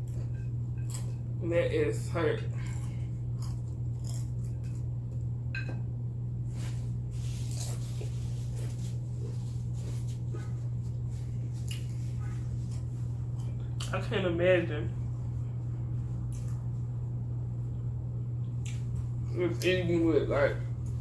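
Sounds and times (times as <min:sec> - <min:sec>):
person chewing: 0:00.0 - 0:01.3, 0:02.5 - 0:05.3, 0:07.1 - 0:13.9, 0:16.2 - 0:16.7, 0:18.4 - 0:19.1
steady low hum: 0:00.0 - 0:21.0
tortilla chips crunching: 0:02.6 - 0:05.3, 0:06.5 - 0:14.0.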